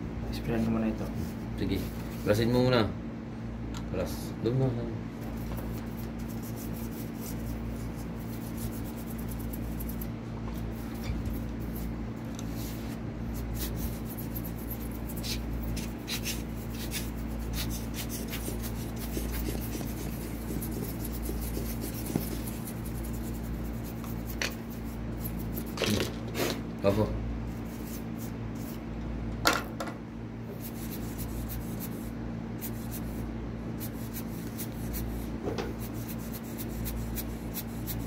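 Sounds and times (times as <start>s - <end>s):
steady low hum: 0.0s - 38.0s
tools scratching and clicking on laptop: 5.4s - 12.5s, 13.3s - 26.5s, 27.6s - 28.8s, 30.6s - 33.2s, 33.8s - 38.0s.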